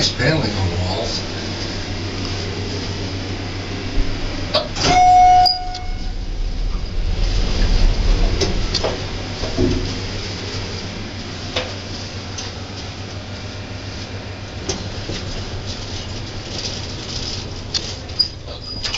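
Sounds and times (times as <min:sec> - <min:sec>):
elevator hum and rumble: 0:00.0 - 0:18.9.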